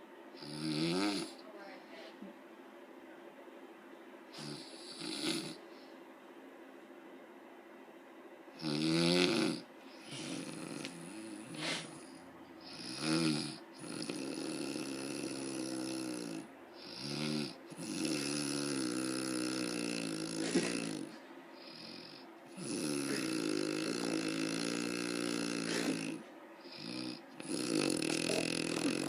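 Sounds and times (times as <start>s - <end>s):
woman snoring: 0.4s - 1.4s, 4.4s - 5.6s, 8.6s - 29.0s.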